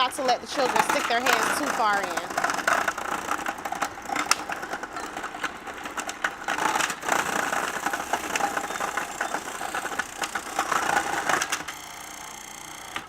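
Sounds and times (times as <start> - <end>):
food processor motor whirring: 0.0 - 13.0
slicing disc clicking and rattling: 0.0 - 13.0.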